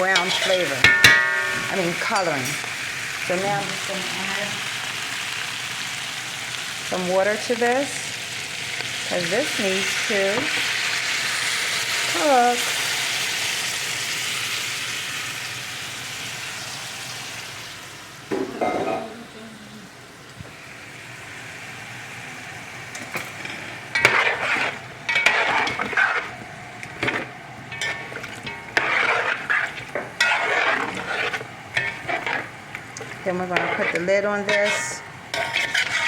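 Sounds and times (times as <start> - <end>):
utensil scraping a pan: 0.0 - 2.7, 23.0 - 36.0
meat sizzling in a pan: 0.0 - 18.4, 20.6 - 36.0.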